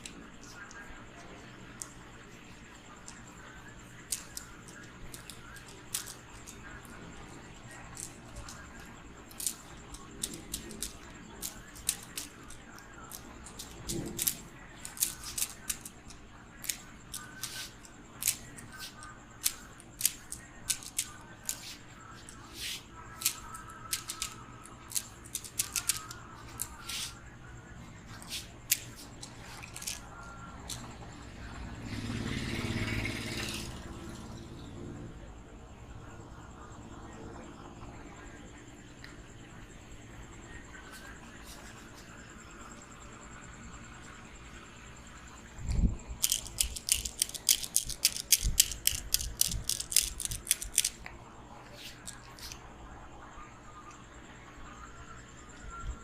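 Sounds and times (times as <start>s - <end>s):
hands swishing: 22.5s - 22.8s, 26.8s - 27.2s
sharp clicks and snaps: 45.7s - 51.1s.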